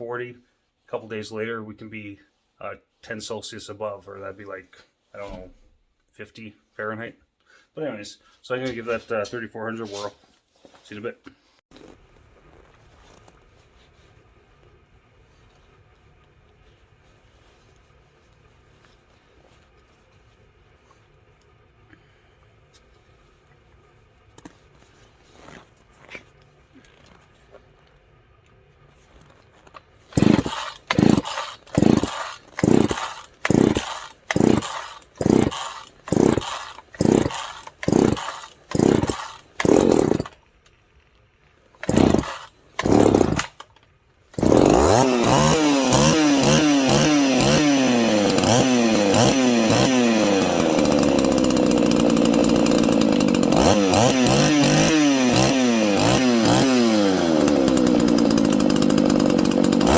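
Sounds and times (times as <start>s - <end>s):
chainsaw pull-start bursts: 30.0s - 40.5s, 41.7s - 59.9s
chainsaw engine revving: 30.1s - 40.4s, 41.8s - 43.7s, 44.4s - 59.9s.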